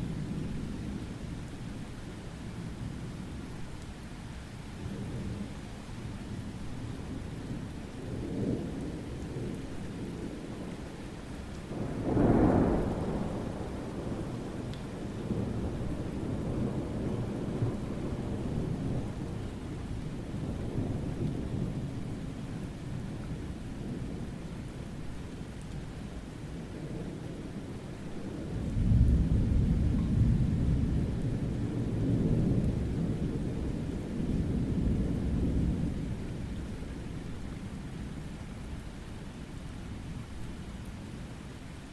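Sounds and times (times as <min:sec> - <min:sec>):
steady rain: 0:00.0 - 0:41.9
rolling thunder: 0:11.7 - 0:22.1, 0:26.7 - 0:37.2.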